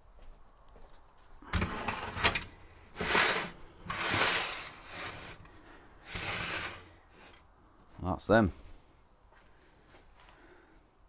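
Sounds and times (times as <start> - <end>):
rough scraping and rattling: 1.6 - 7.4.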